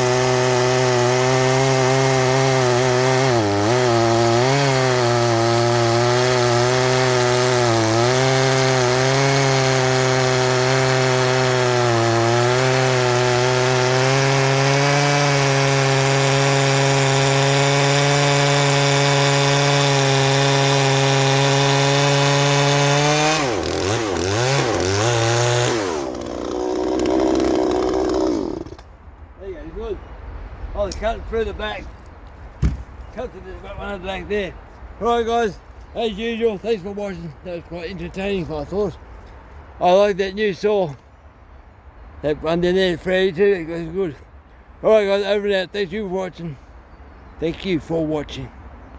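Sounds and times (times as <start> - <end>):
chainsaw cutting wood: 0.0 - 28.9.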